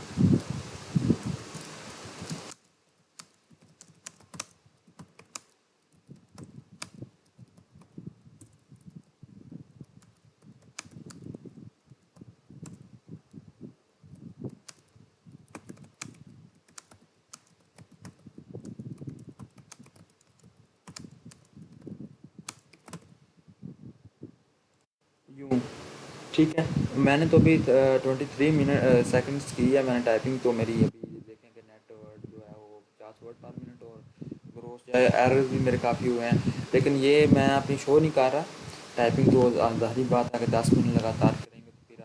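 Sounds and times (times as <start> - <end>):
fast typing on keyboard: 3.2 - 9.1, 9.8 - 11.4, 14.5 - 21.9, 22.5 - 23.1.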